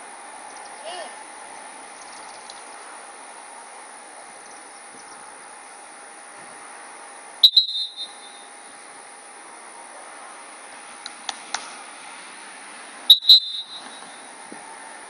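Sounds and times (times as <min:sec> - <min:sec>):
insects humming: 0:00.0 - 0:11.0, 0:11.8 - 0:15.0
dog whistle blast: 0:07.4 - 0:08.4, 0:13.1 - 0:14.0.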